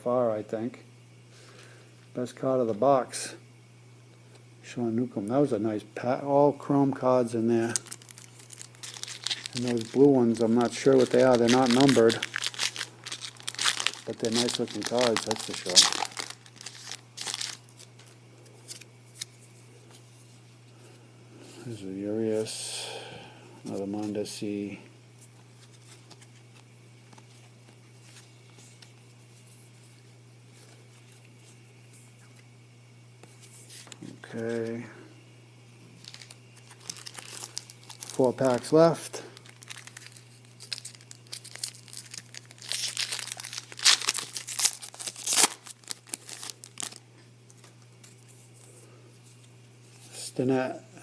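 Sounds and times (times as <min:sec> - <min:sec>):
steady low hum: 0:00.0 - 0:51.0
foil wrapper tearing and crinkling: 0:07.6 - 0:18.1, 0:36.0 - 0:47.0
trading cards rustling: 0:07.6 - 0:19.4, 0:36.0 - 0:47.0.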